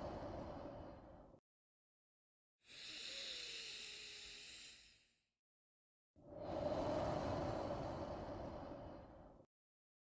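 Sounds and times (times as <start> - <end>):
person breathing in deeply: 0.0 - 1.4, 2.7 - 5.1, 6.3 - 9.5.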